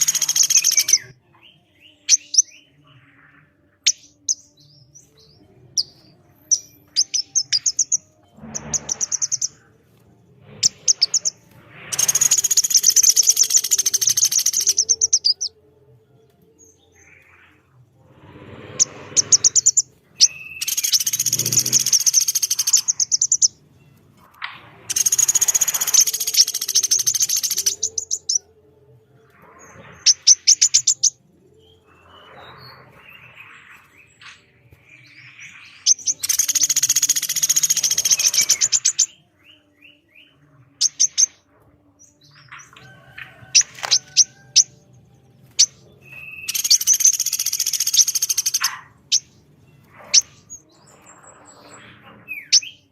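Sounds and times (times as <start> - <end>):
bird chirps and rattles: 19.2 - 23.5.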